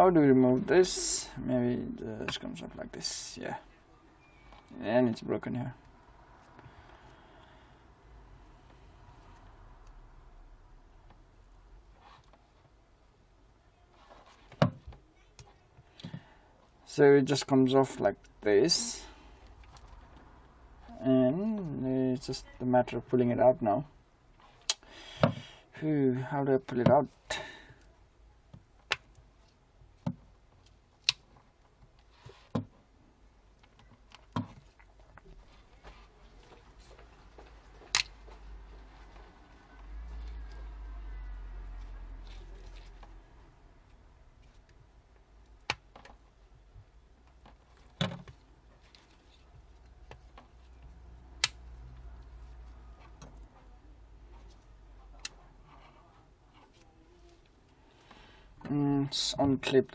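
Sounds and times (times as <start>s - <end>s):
faint low hum: 0.0s - 59.9s
light clicks and taps of tools: 54.3s - 56.0s.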